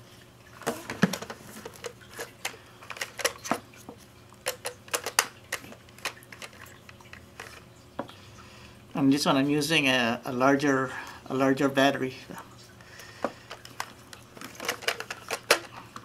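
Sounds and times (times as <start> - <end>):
plastic clicks and knocks: 0.6 - 3.6, 4.4 - 8.1, 13.2 - 16.0.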